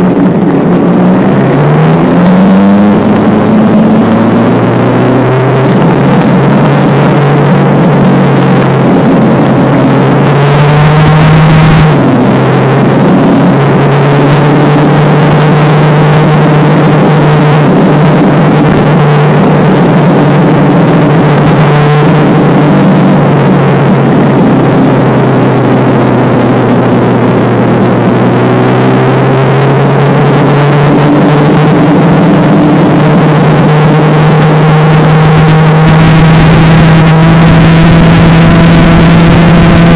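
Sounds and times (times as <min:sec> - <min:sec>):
constant rush of noise: 0:00.0 - 0:39.9
motorcycle engine running: 0:00.0 - 0:39.9.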